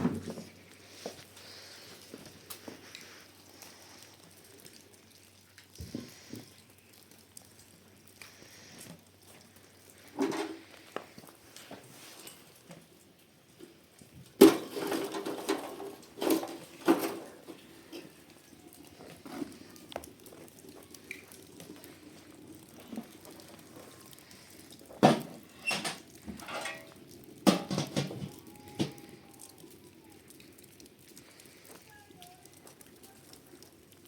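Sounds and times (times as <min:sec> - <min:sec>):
hard objects knocking and clattering: 0:00.0 - 0:00.6, 0:14.4 - 0:18.1, 0:25.0 - 0:29.0.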